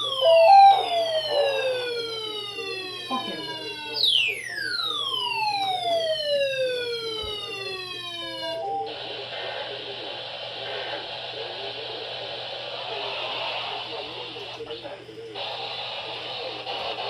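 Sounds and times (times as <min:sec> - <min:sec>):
siren-like tone sliding down: 0:00.0 - 0:02.5.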